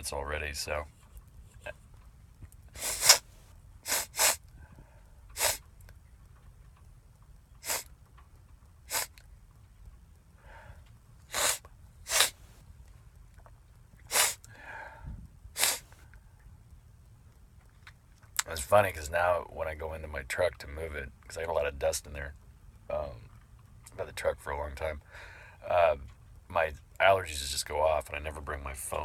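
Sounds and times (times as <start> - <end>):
man sniffing hard: 2.8 - 4.4, 5.4 - 5.6, 7.6 - 7.9, 8.9 - 9.2, 11.3 - 12.5, 14.1 - 14.8, 15.6 - 16.0.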